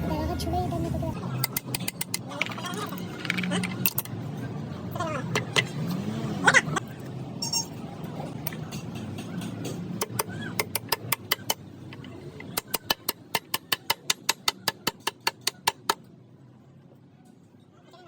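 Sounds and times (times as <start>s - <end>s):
rapid sharp knocks: 12.4s - 16.0s.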